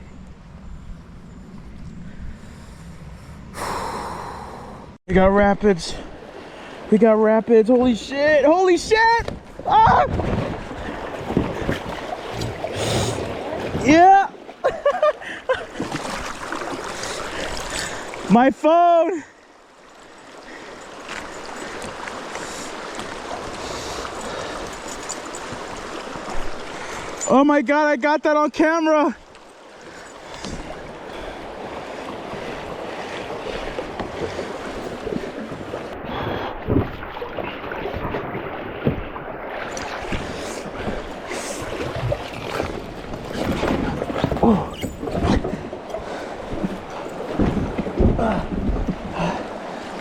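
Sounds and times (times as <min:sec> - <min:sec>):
river water rushing: 0:15.2 - 0:27.3, 0:28.9 - 0:50.0.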